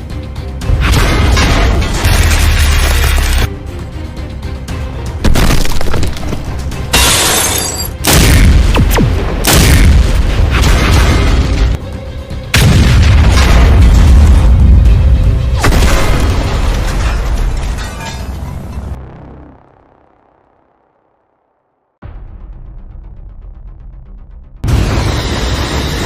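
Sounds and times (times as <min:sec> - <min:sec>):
background music: 0:00.0 - 0:19.0
booming explosion blasts: 0:12.6 - 0:17.1.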